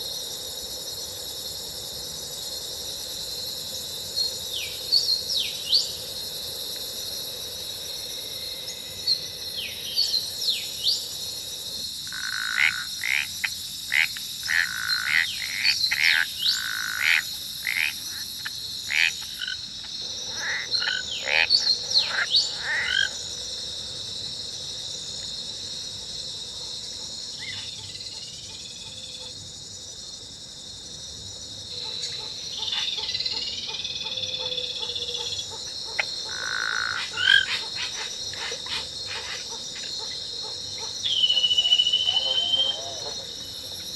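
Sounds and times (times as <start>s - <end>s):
high-pitched insect drone: 0.0s - 43.9s
frog-like croaking calls: 12.0s - 23.3s, 31.8s - 43.5s.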